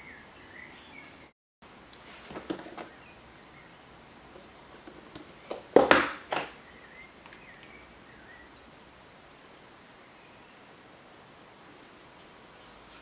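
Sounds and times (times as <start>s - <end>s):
bird chirping faintly: 6.6s - 10.8s.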